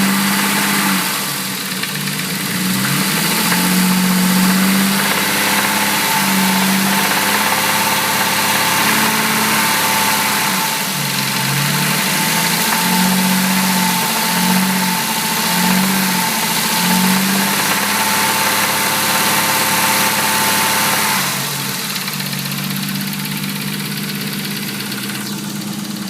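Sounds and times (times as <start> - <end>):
car engine running with a knock: 0.0 - 26.0.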